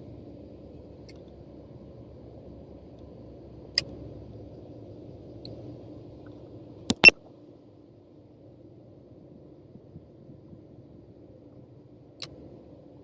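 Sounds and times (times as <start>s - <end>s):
low rumble with faint hum: 0.0s - 13.0s
sharp clicks: 6.9s - 7.2s.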